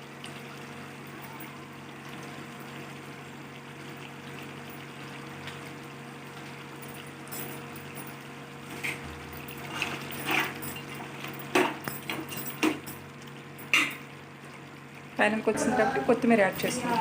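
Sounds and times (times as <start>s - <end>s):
curry bubbling in a pan: 0.0s - 6.8s, 13.0s - 16.4s.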